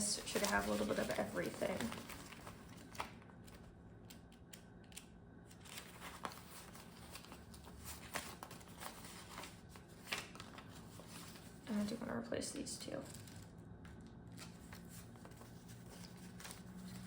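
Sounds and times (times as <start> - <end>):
paper rustling: 0.0 - 3.7, 5.5 - 12.0, 14.3 - 17.0.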